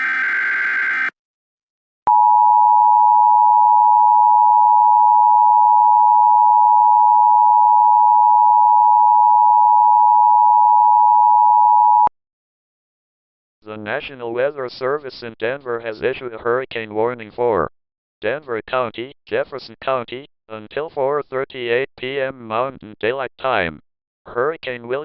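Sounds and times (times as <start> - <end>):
buzzy data burst screech: 0.0 - 1.1.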